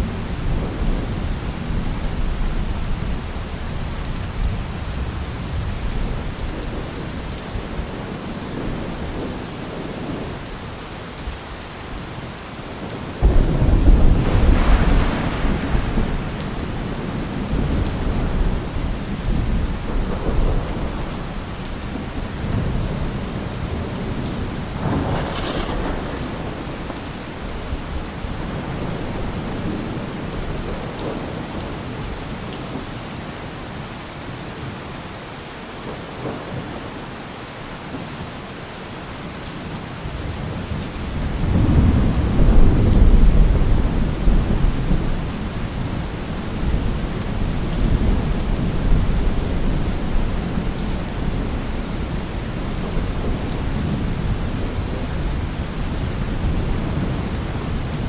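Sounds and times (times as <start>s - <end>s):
heavy rain: 0.0s - 58.0s
rolling thunder: 13.2s - 31.4s, 41.1s - 58.0s.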